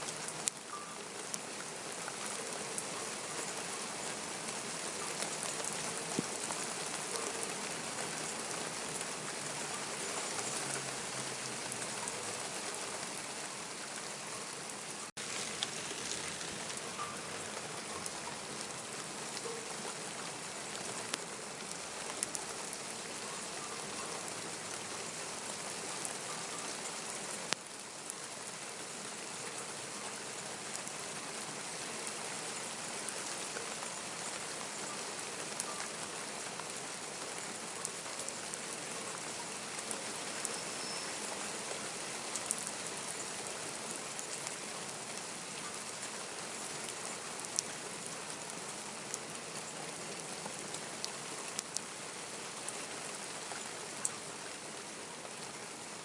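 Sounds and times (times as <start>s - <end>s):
steady rain hiss: 0.0s - 56.0s
raindrop ticks: 4.4s - 13.2s, 15.2s - 24.9s, 35.5s - 36.7s, 50.1s - 51.9s.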